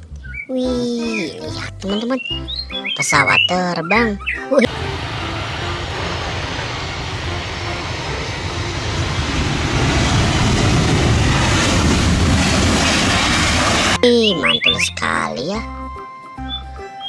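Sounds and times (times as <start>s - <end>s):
airplane engine drone: 4.7s - 15.0s.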